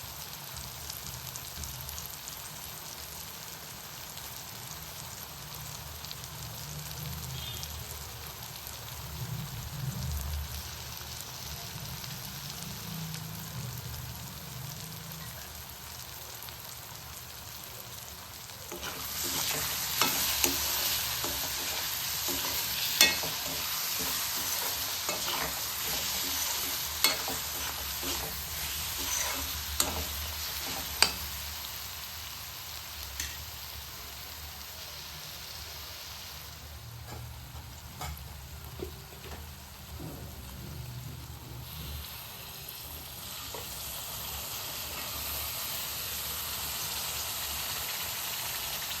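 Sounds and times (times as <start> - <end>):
food sizzling in a pan: 0.0 - 49.0
spatula scraping a pan: 18.7 - 31.4.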